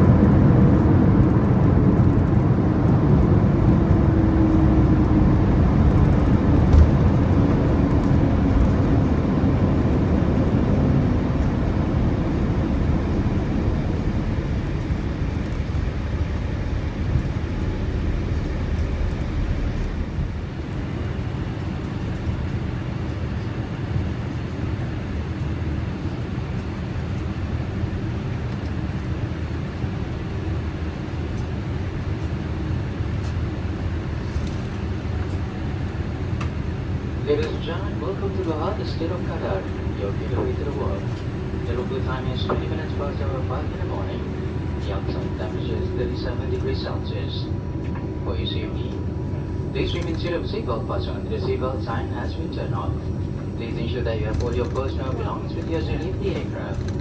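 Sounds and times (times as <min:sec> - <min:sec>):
jet engine rumble inside cabin: 0:00.0 - 0:57.0.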